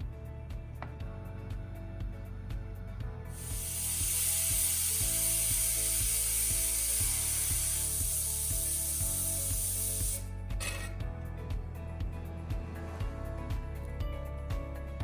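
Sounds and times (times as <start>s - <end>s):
background music: 0.0s - 15.0s
high-pitched hiss: 3.3s - 10.9s.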